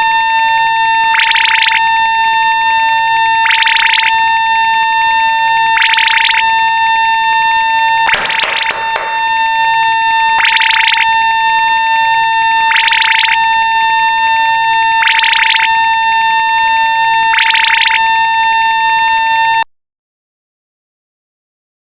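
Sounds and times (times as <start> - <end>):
loud buzzing tone: 0.0 - 19.6
broad noise burst: 8.1 - 11.1.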